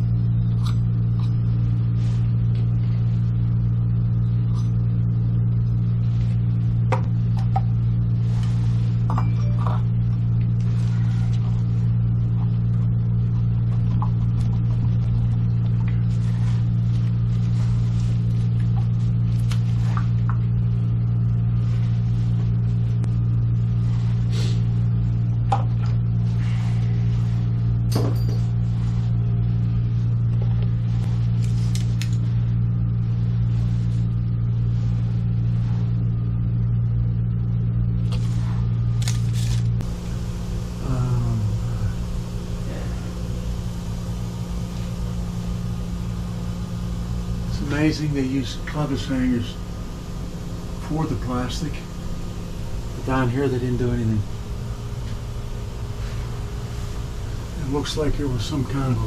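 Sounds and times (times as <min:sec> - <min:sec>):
low motor hum: 0:00.0 - 0:59.0
light knocks and clinks: 0:27.9 - 0:28.5.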